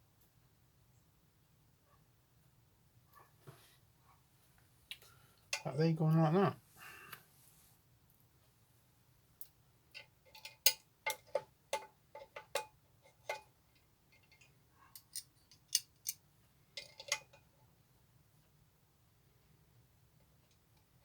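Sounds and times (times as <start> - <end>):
small metal parts clicking and clinking: 9.9 - 13.5, 14.1 - 16.2, 16.8 - 17.4.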